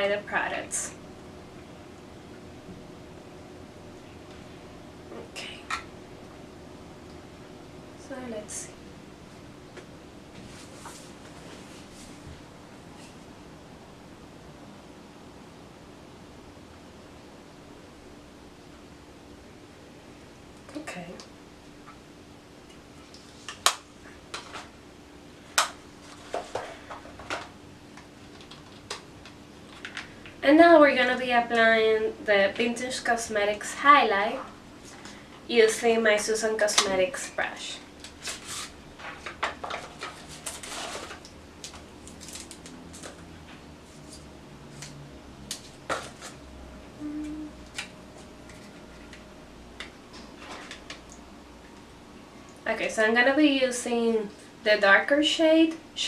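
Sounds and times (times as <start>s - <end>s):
soft brush rustling: 10.4s - 13.3s.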